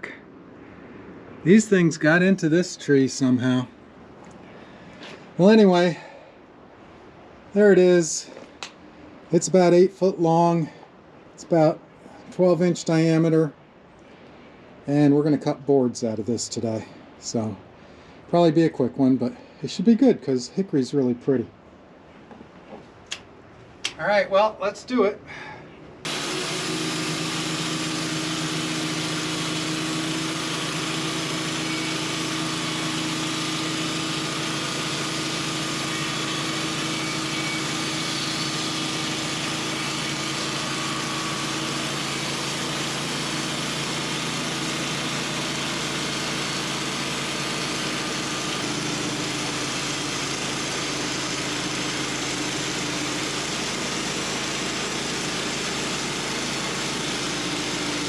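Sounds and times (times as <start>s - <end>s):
saw cutting through log: 26.1s - 58.0s
sawmill engine running: 26.1s - 58.0s.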